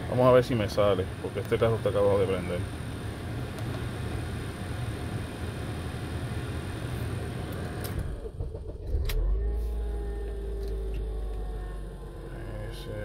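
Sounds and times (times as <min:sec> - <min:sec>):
car engine running roughly: 0:00.0 - 0:13.0
low hum with faint whine: 0:00.0 - 0:13.0.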